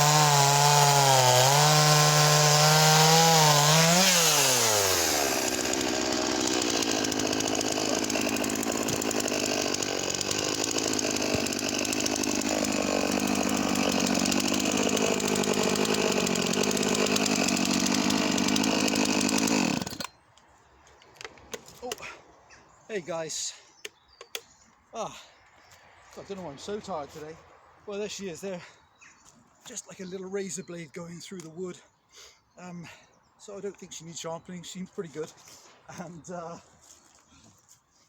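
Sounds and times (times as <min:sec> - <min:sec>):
chainsaw running: 0:00.0 - 0:20.1.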